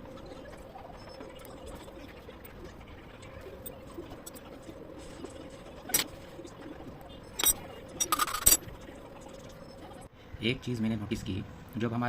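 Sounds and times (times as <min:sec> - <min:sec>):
faint steady hum: 0:00.0 - 0:12.0
metal tools clinking: 0:07.4 - 0:08.7.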